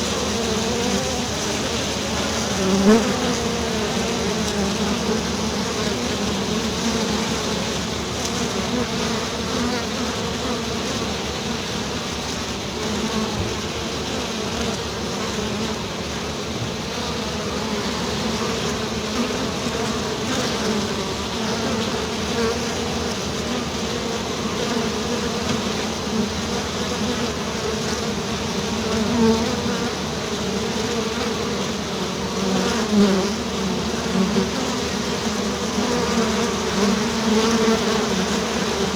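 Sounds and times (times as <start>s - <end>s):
swarm of bees buzzing: 0.0s - 38.9s.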